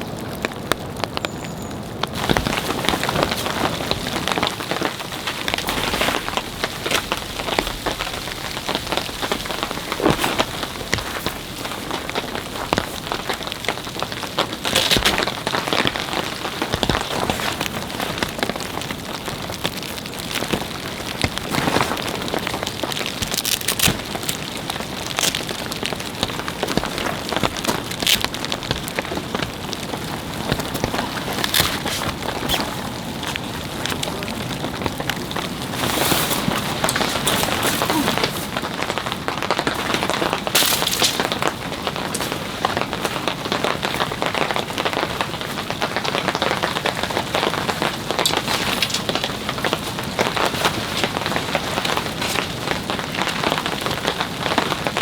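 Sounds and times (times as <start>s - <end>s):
rain pouring: 0.0s - 55.0s.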